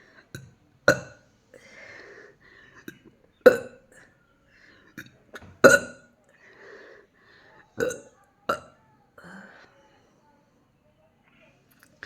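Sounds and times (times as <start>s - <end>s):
forced burps: 0.3s - 1.2s, 2.8s - 4.0s, 5.0s - 6.1s, 7.8s - 9.4s.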